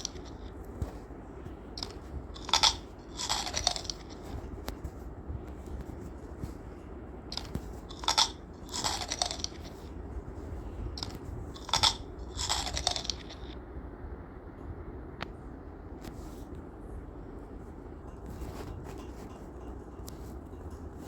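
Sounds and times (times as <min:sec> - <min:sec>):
crunchy cookie being chewed: 0:00.0 - 0:13.6.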